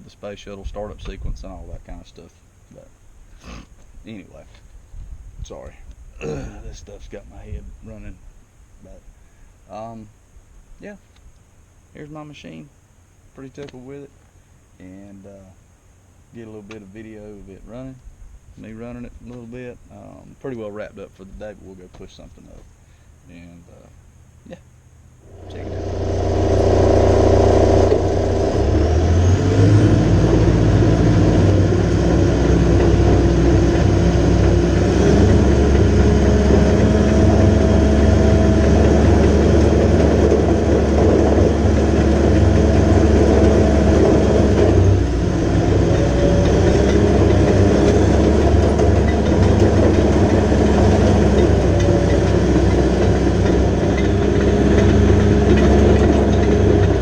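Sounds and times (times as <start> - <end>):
bulldozer diesel engine running hard: 25.2 - 57.0.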